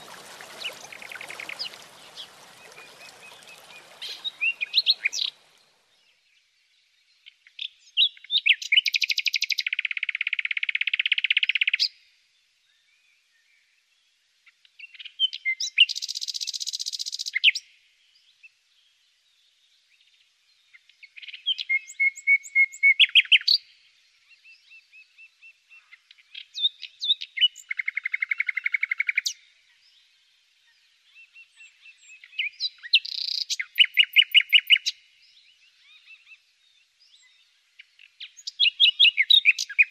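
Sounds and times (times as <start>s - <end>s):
songbird singing trills: 0.0s - 6.1s, 7.2s - 12.0s, 14.8s - 17.6s, 30.7s - 39.9s.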